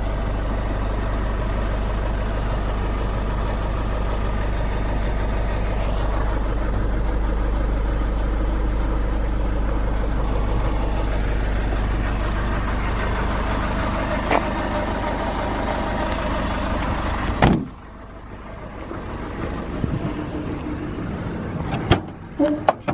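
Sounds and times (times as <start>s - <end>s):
diesel engine idling: 0.0s - 22.9s
loud thud: 17.4s - 17.7s.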